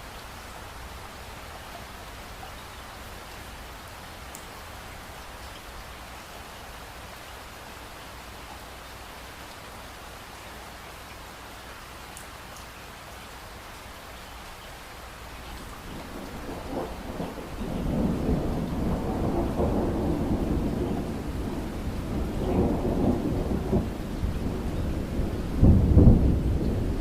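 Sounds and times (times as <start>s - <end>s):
steady rain: 0.0s - 27.0s
rolling thunder: 15.8s - 27.0s.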